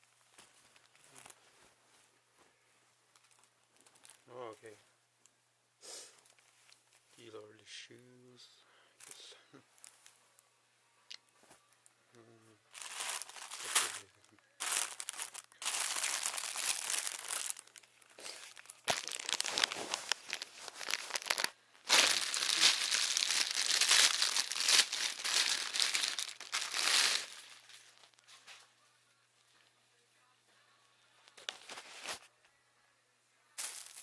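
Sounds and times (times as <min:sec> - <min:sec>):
packaging crinkling and rustling: 0:00.3 - 0:01.5, 0:03.1 - 0:04.3, 0:12.7 - 0:28.6.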